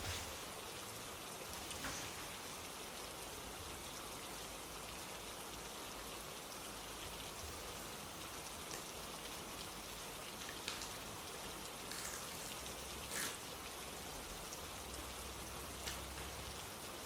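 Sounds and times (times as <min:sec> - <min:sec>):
steady rain falling: 0:00.0 - 0:17.0.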